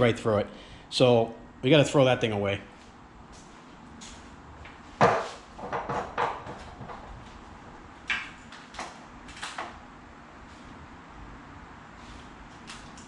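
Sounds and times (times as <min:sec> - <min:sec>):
knocks and clunks of parts: 0:05.0 - 0:07.4.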